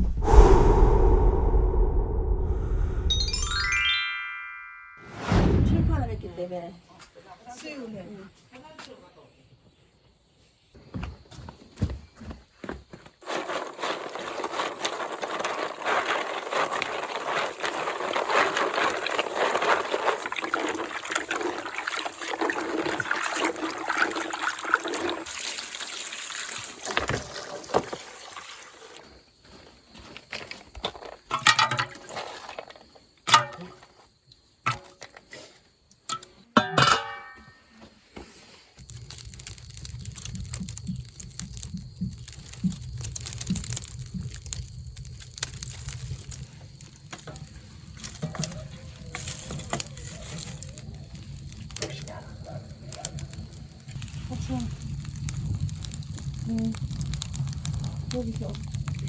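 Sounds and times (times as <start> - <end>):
water pouring and splashing: 13.2 - 29.2, 31.4 - 32.8, 38.8 - 52.0.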